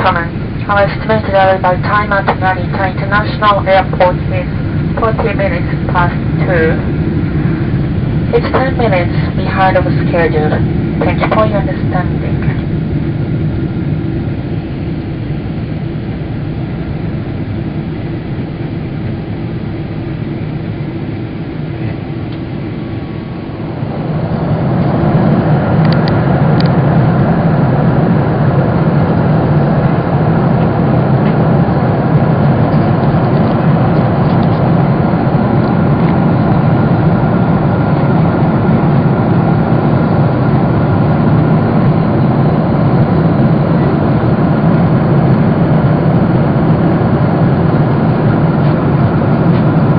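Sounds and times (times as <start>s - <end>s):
jet engines rumbling in cabin: 0.0s - 49.9s.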